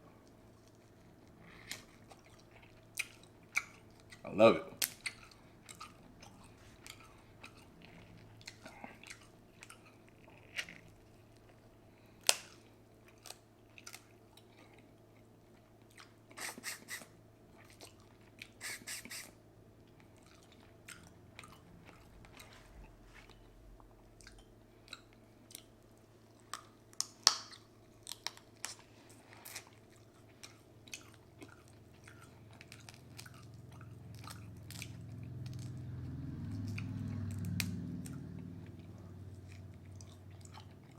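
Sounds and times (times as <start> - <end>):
wet chewing and lip smacks: 0.2 - 40.9
low hum: 19.8 - 24.9, 30.5 - 40.9.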